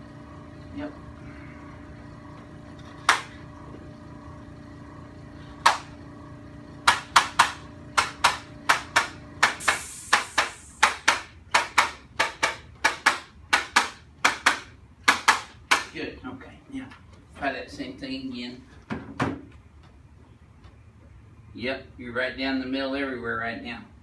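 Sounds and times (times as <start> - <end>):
sharp slaps: 3.0 - 3.4, 5.6 - 5.9, 6.8 - 16.0.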